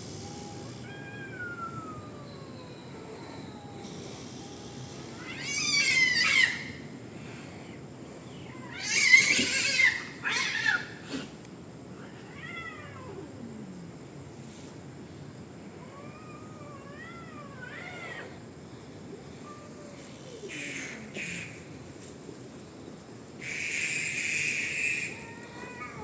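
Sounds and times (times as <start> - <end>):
high insect buzz: 0.0 - 0.8, 3.0 - 6.7, 23.4 - 25.8.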